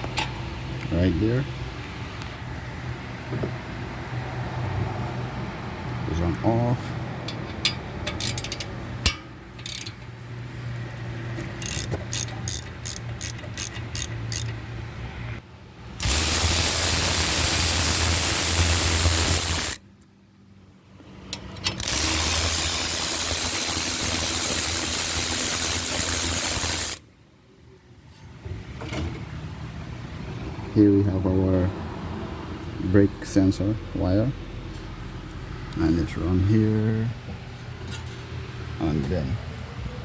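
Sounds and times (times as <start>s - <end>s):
ratchet clicking: 7.2s - 10.2s, 10.9s - 14.6s, 16.0s - 19.8s, 21.3s - 27.0s
loud steady mechanical whirring: 11.4s - 14.6s, 15.9s - 19.8s, 21.7s - 27.0s.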